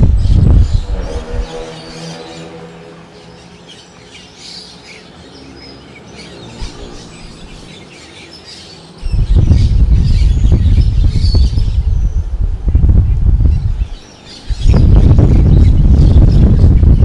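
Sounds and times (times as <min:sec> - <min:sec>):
wind gust on microphone: 0:00.0 - 0:03.4, 0:06.2 - 0:07.9, 0:09.0 - 0:17.0
birds chirping: 0:00.0 - 0:17.0.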